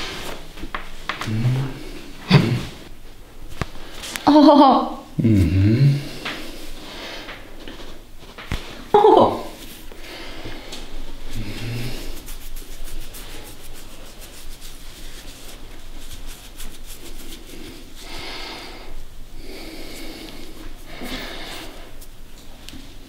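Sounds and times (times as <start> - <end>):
hands rubbing skin and clothing: 0.0 - 2.9, 9.5 - 23.0
person breathing: 5.2 - 7.5, 9.9 - 12.4, 17.2 - 22.1.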